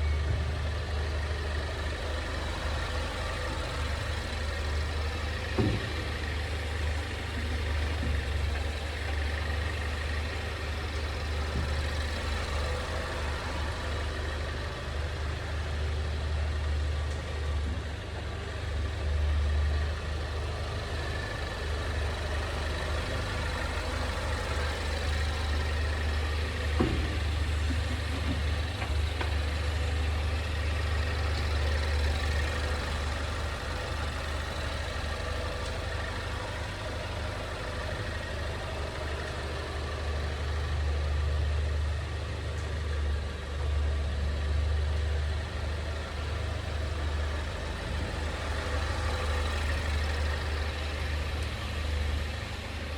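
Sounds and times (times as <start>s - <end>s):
sharp knock from car underbody: 5.6s - 6.1s.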